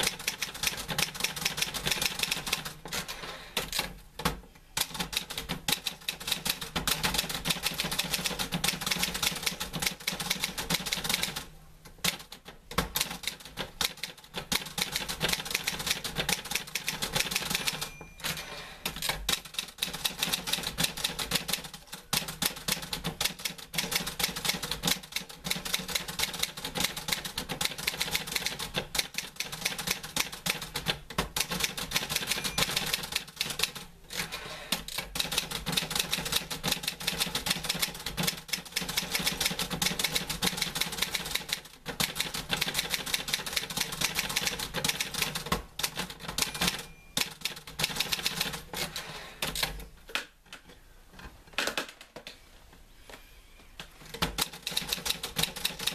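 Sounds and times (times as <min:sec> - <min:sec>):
typewriter keys typing: 0:00.0 - 0:49.8, 0:54.0 - 0:55.9
typewriter bell ringing: 0:17.2 - 0:19.0, 0:32.0 - 0:33.3, 0:46.2 - 0:47.6.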